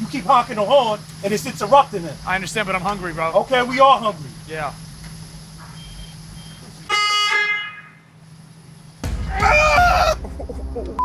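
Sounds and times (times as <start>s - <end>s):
car horn honk: 6.9s - 8.0s
loud wavering shout: 9.3s - 10.2s.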